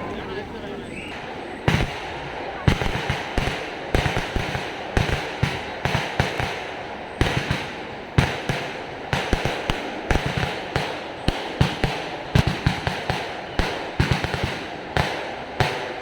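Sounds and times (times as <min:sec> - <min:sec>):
firecrackers banging: 0:00.0 - 0:16.0.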